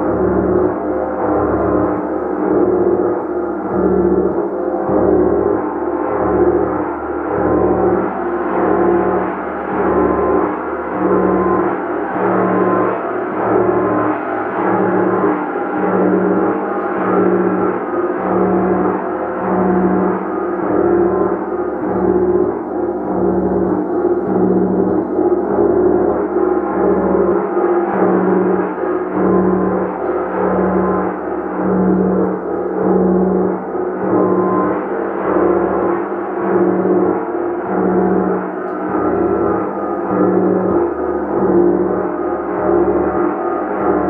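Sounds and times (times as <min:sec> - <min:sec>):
gong ringing: 0:00.0 - 0:44.0.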